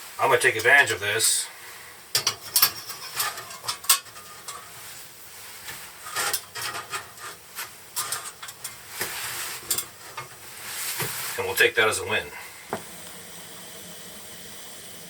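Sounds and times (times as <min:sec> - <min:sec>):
gas stove burner hiss: 0:00.0 - 0:15.0
metal cookware clinking: 0:02.1 - 0:04.8, 0:06.0 - 0:07.4, 0:08.0 - 0:08.8, 0:09.6 - 0:10.4.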